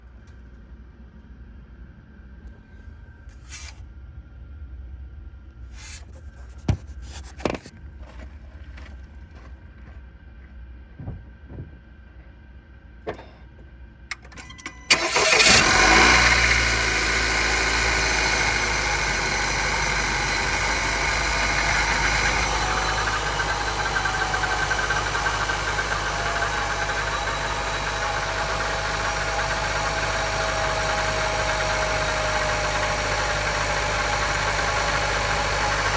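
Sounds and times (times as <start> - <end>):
car engine starting and idling: 14.1 - 35.9.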